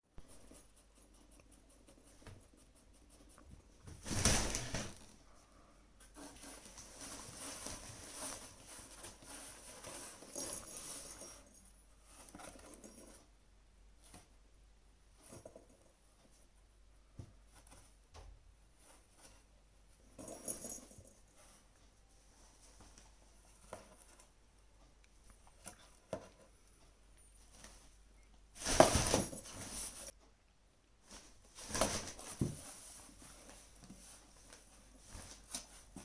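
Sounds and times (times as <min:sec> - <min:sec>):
small animal scratching and rustling: 0:00.2 - 0:05.1, 0:06.0 - 0:13.3, 0:28.6 - 0:30.1, 0:31.0 - 0:36.0.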